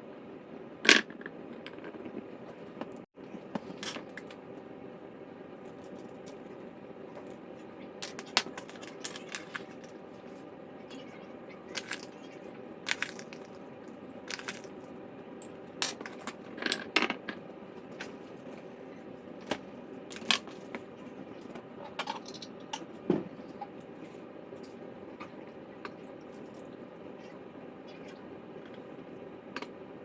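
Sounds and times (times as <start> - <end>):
steady low hum: 0.0 - 30.0
glass jars clinking: 12.9 - 13.5, 14.3 - 14.7.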